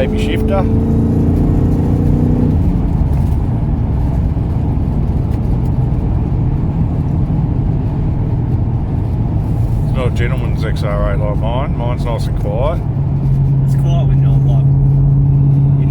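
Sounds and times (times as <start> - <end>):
engine and road rumble in car: 0.0 - 15.9
higher engine tone: 0.0 - 15.9.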